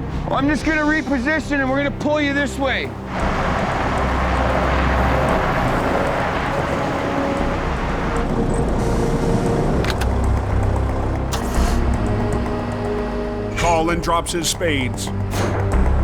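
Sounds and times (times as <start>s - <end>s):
loud rushing noise: 3.0s - 9.1s
tow truck engine running: 3.0s - 16.0s
sharp clicks: 9.8s - 12.5s.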